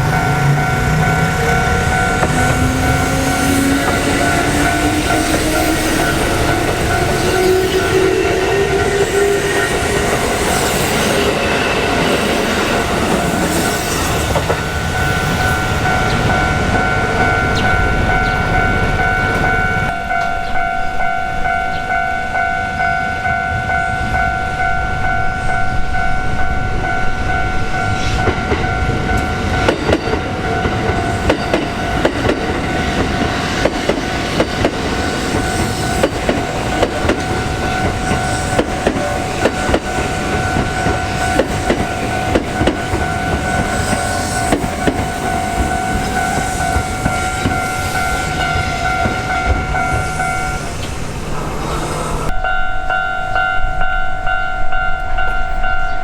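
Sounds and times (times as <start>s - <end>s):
level crossing bell ringing: 0.0s - 12.1s, 12.7s - 33.6s
train wheels clicking over rail joints: 0.0s - 20.4s, 28.0s - 51.8s
train rumbling: 0.0s - 56.0s.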